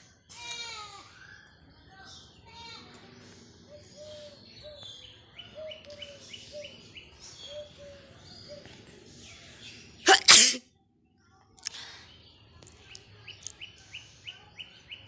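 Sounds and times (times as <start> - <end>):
small birds chirping: 0.0 - 15.0
person sneezing: 10.1 - 10.6.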